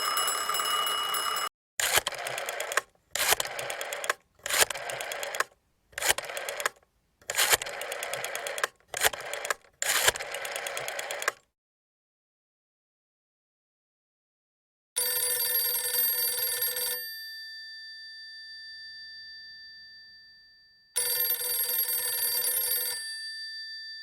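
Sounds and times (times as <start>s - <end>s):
mechanism ringing tone: 0.0s - 1.5s
rattling runs of fast clicks: 1.8s - 11.4s.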